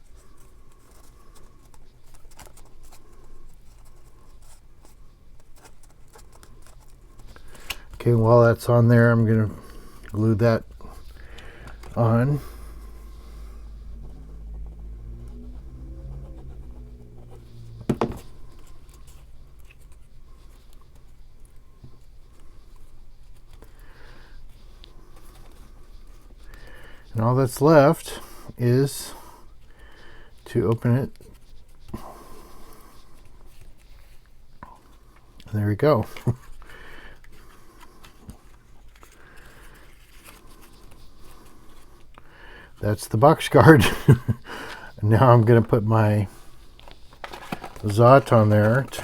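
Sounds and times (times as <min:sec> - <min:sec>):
paper rustling: 0:00.0 - 0:28.0, 0:36.0 - 0:42.3, 0:44.1 - 0:49.0
low room hum: 0:00.0 - 0:49.0
small taps and scrapes: 0:46.8 - 0:49.0.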